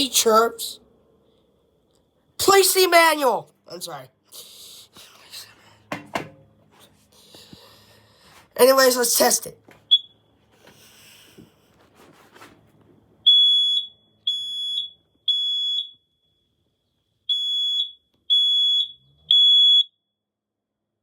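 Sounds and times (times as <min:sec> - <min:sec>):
smoke alarm beeping: 0:09.9 - 0:10.3, 0:13.2 - 0:16.5, 0:17.3 - 0:20.0.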